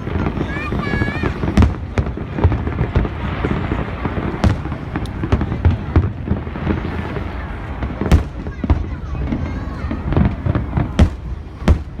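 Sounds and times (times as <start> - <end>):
fireworks bangs and crackle: 0.0 - 12.0.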